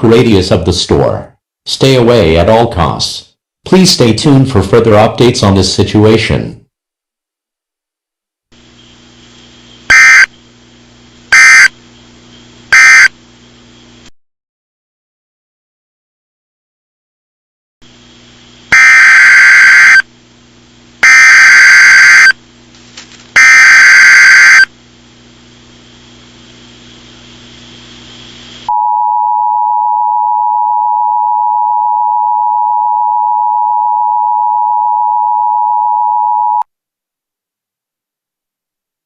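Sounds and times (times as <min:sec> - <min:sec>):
screechy digital header bursts: 0:09.9 - 0:10.3, 0:11.3 - 0:11.7, 0:12.7 - 0:13.1, 0:18.7 - 0:20.0, 0:21.0 - 0:22.4, 0:23.4 - 0:24.7.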